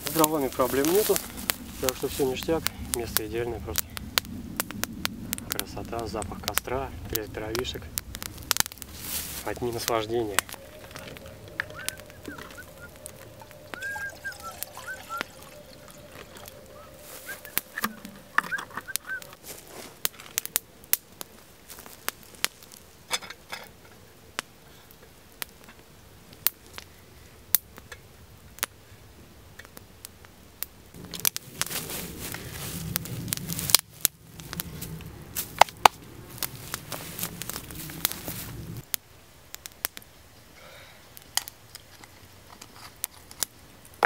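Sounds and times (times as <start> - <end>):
low rushing noise: 0.0 - 19.7
campfire crackling and popping: 0.0 - 44.0.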